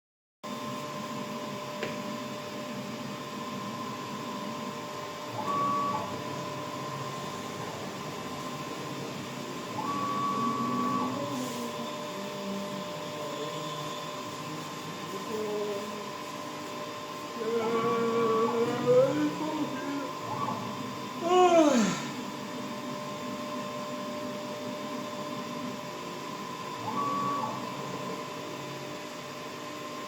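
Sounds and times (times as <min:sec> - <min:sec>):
machine motors whining: 0:02.7 - 0:23.3.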